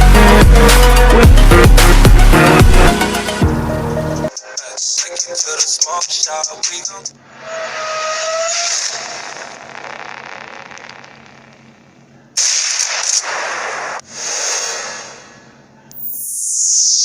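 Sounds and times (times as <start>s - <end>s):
loud noise burst: 12.4s - 15.2s
hiss: 12.4s - 15.4s.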